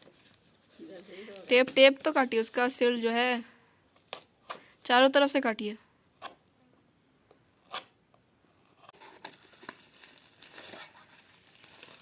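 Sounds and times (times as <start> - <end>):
tape tearing and rustling: 8.6 - 12.0.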